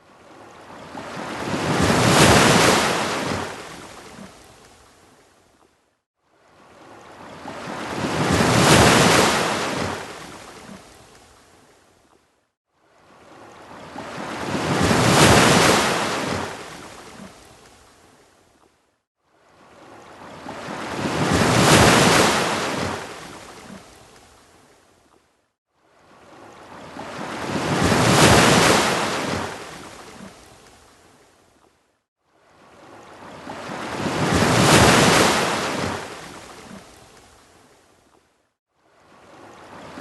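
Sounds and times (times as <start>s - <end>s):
ocean waves crashing on beach: 0.0s - 4.7s, 6.4s - 11.2s, 13.0s - 17.8s, 19.4s - 24.1s, 26.0s - 31.2s, 32.4s - 37.8s, 39.0s - 40.0s.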